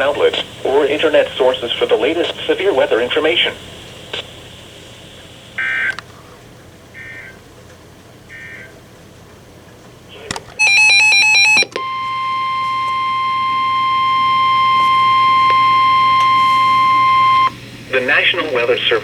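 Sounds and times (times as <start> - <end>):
steady warning alarm tone: 0.0 - 6.0, 6.9 - 7.4, 8.3 - 8.8, 10.6 - 19.0
warbling digital data tones: 10.6 - 18.4.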